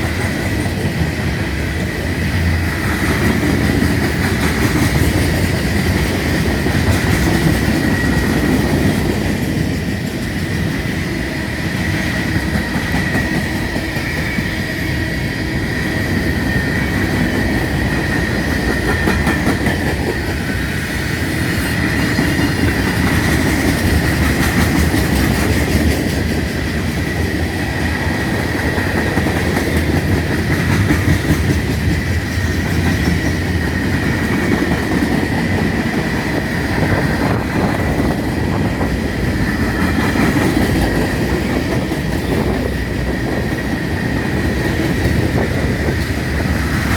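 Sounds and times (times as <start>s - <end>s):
freight train rumbling past: 0.0s - 46.9s
wheels squealing on rail: 11.0s - 25.7s
wheels clacking over rail joints: 16.2s - 46.9s.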